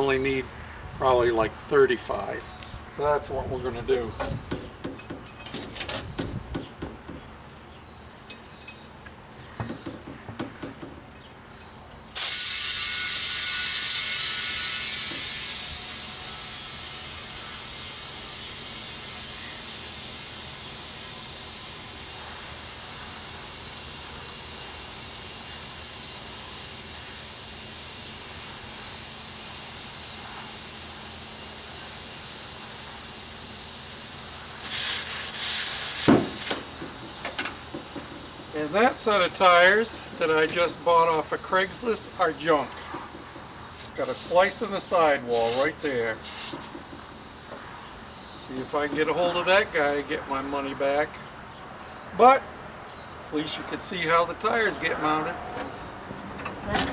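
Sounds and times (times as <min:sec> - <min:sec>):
air hose hissing into tire: 0:12.2 - 0:51.0.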